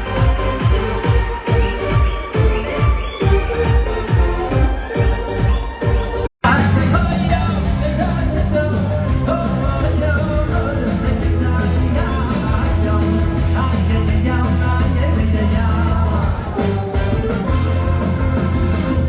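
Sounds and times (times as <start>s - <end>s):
music with singing: 0.0s - 19.0s
sustained bass line: 6.4s - 19.0s.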